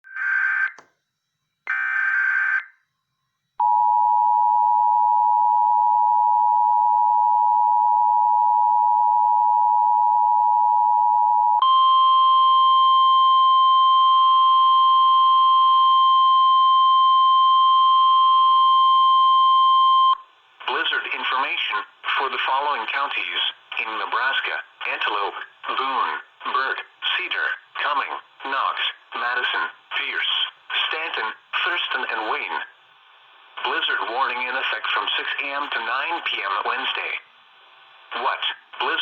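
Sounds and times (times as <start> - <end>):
buzzy digital data warble: 0.1 - 0.8
steady warning tone: 1.7 - 2.8.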